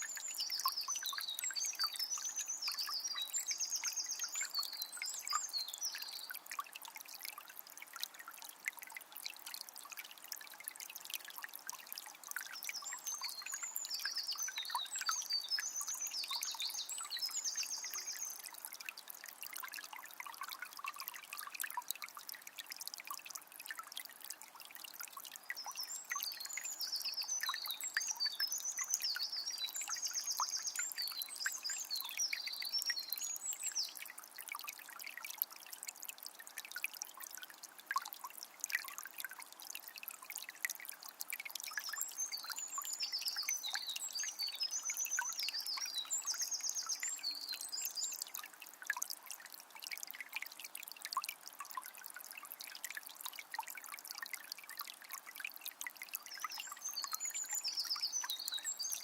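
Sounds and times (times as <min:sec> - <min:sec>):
songbird singing: 0:00.0 - 0:06.4, 0:12.5 - 0:18.6, 0:25.5 - 0:34.1, 0:41.7 - 0:48.4, 0:56.2 - 0:59.0
water trickling and splashing: 0:00.0 - 0:59.0.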